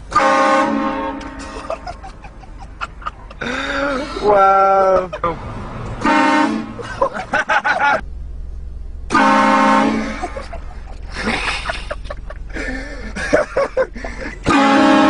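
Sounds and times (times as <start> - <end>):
train horn blast: 0.1 - 1.7, 6.0 - 6.8, 9.1 - 10.4, 14.4 - 15.0.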